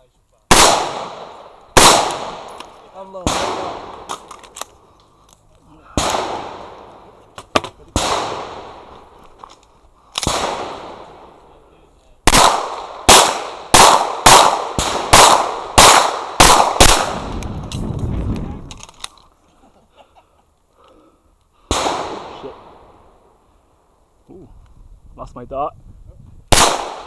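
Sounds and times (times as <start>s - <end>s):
pistol shots with echo: 0.5s - 4.6s, 5.9s - 9.1s, 10.2s - 11.4s, 12.2s - 17.2s, 21.7s - 23.0s, 26.5s - 27.0s.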